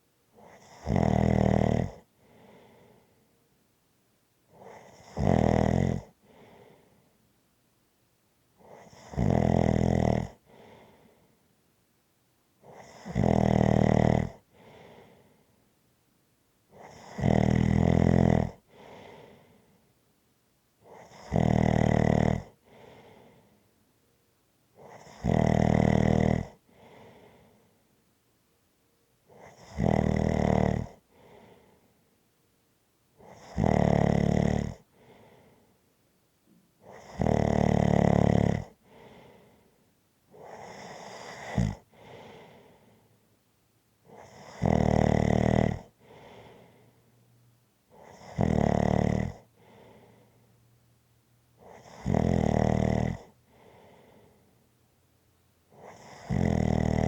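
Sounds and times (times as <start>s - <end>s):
person snoring: 0.4s - 2.7s, 4.6s - 6.2s, 8.6s - 10.9s, 12.7s - 15.0s, 16.8s - 19.3s, 20.9s - 23.3s, 24.8s - 27.4s, 29.4s - 31.7s, 33.2s - 35.3s, 36.9s - 39.4s, 40.3s - 42.8s, 44.1s - 46.8s, 47.9s - 50.3s, 51.6s - 54.4s, 55.8s - 57.0s
faint breath: 2.0s - 3.6s, 6.1s - 7.4s, 10.4s - 11.6s, 14.4s - 15.8s, 18.6s - 20.1s, 22.5s - 24.3s, 26.5s - 28.1s, 30.9s - 32.3s, 34.8s - 36.0s, 38.7s - 43.4s, 45.9s - 48.4s, 49.3s - 50.8s, 53.1s - 54.8s.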